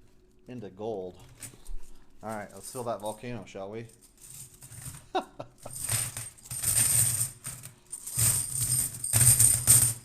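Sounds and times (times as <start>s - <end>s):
coins poured jingling: 5.7s - 10.0s.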